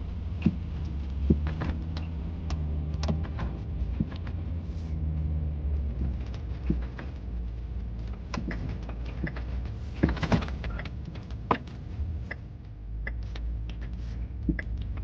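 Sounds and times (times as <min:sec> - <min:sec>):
low steady rumble: 0:00.0 - 0:15.0
clicks and knocks: 0:08.0 - 0:12.4.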